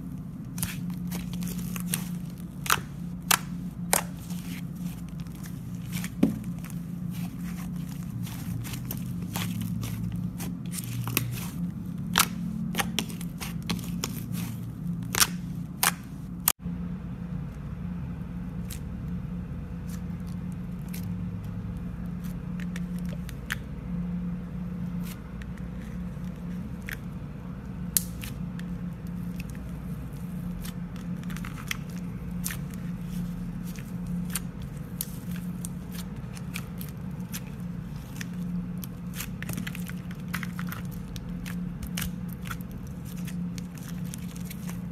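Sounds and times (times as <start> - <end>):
steady low hum: 0.0 - 44.9
slime clicking and crackling: 0.4 - 16.6, 27.9 - 44.9.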